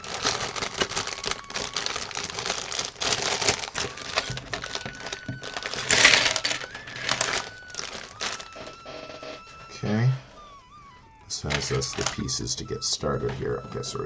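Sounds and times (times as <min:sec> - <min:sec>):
plastic pieces rattling on a tray: 0:00.0 - 0:08.8, 0:11.5 - 0:12.3
plastic bags crinkling: 0:00.0 - 0:09.6, 0:10.3 - 0:12.4.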